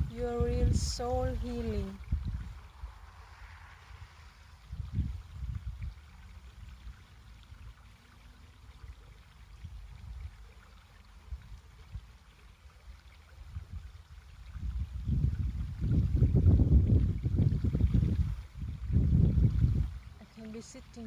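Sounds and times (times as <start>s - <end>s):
wind buffeting microphone: 0.0s - 7.8s, 13.4s - 21.0s
stream water flowing: 0.0s - 21.0s.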